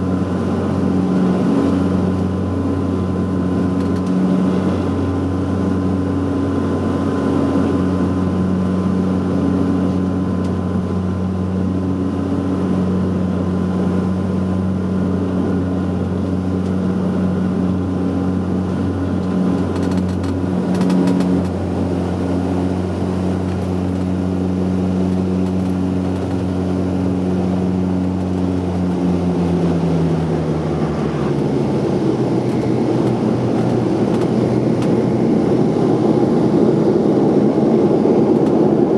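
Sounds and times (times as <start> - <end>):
turboprop engines droning: 0.0 - 38.9.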